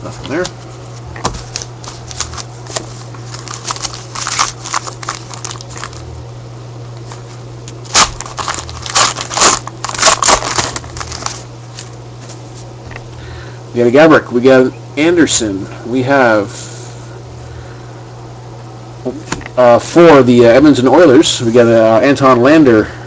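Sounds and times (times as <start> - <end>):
cards being handled: 0.0 - 6.1, 7.0 - 13.1
steady low hum: 0.0 - 23.0
wrapper crinkling and tearing: 1.4 - 6.1, 7.8 - 12.0.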